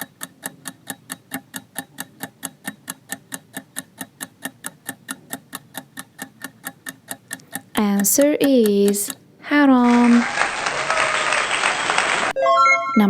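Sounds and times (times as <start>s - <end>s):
rapid clock ticking: 0.0s - 9.7s.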